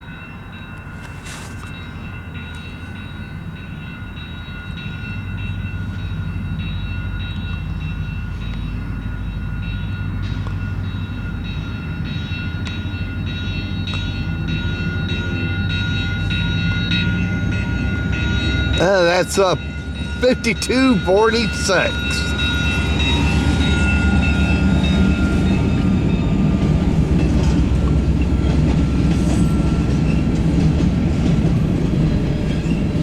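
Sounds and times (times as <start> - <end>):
high-pitched ringing: 0.0 - 30.5
diesel locomotive engine rumble: 0.0 - 33.0.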